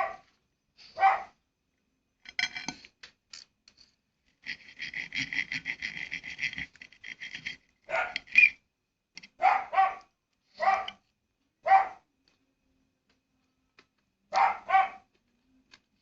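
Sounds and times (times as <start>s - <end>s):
dog barking: 0.0s - 0.3s, 1.0s - 1.4s, 7.9s - 8.2s, 9.4s - 11.0s, 11.6s - 12.1s, 14.3s - 15.1s
rapid scratching and pattering: 4.4s - 7.6s.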